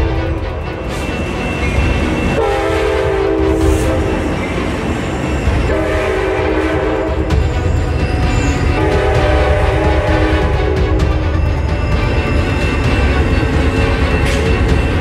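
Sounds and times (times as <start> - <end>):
moving train rumble: 0.0 - 15.0
locomotive air horn blasts: 2.4 - 4.2, 5.7 - 7.3, 8.8 - 11.0.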